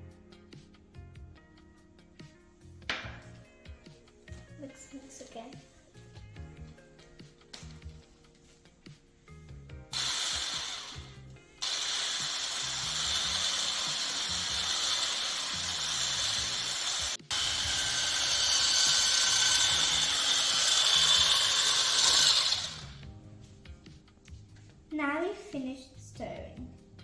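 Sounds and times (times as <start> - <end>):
electric hand mixer beating: 9.9 - 23.1.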